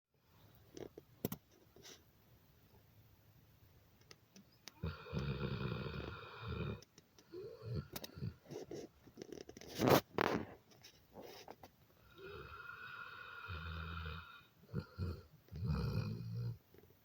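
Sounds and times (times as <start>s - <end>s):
dog snoring: 4.8s - 8.8s, 12.0s - 16.6s.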